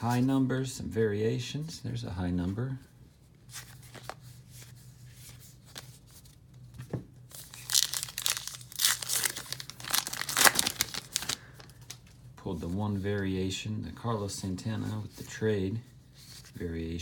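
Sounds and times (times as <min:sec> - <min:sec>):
wrapper tearing and crinkling: 0:07.3 - 0:12.1.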